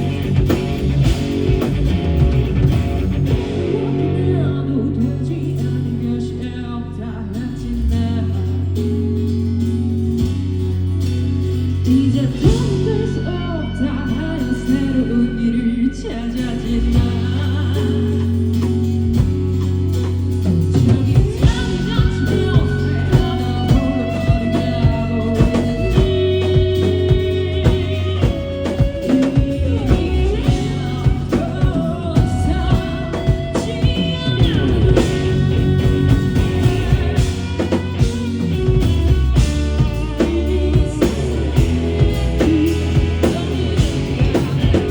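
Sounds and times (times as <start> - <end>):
steady drum beat: 0.0 - 4.0, 16.8 - 44.9
live rock band playing: 0.0 - 44.9
person singing: 3.3 - 9.3, 11.8 - 19.2, 20.4 - 44.9.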